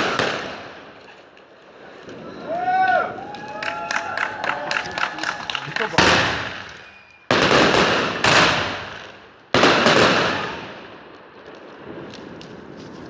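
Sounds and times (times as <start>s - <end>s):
fireworks exploding: 0.0s - 13.0s
small firework cracks: 0.0s - 13.0s.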